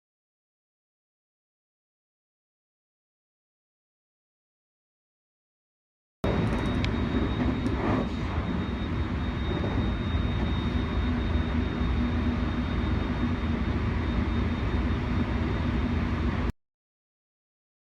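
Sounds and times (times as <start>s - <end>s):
electric train rumbling: 6.2s - 16.5s
faint high whine: 6.2s - 16.5s
brief sliding tone: 6.3s - 15.6s.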